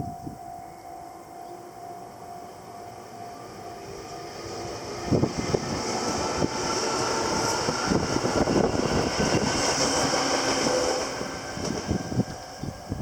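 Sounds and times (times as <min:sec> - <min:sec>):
train rumbling past: 0:01.9 - 0:13.0
wind buffeting microphone: 0:03.9 - 0:13.0.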